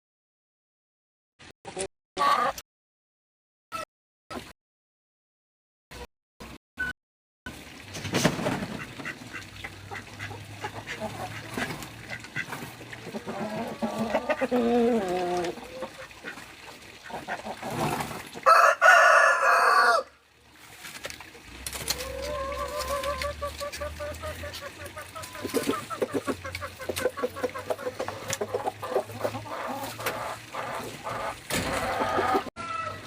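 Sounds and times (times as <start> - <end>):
rooster crowing: 18.4 - 20.2.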